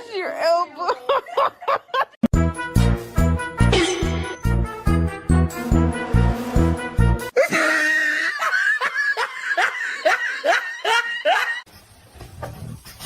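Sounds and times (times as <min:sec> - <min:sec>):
person laughing: 0:03.7 - 0:04.4, 0:07.4 - 0:11.6.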